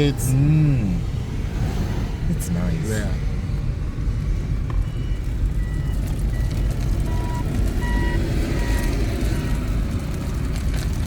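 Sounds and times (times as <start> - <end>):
car road rumble from inside: 0.0 - 11.0
short electronic beeps: 4.8 - 9.6.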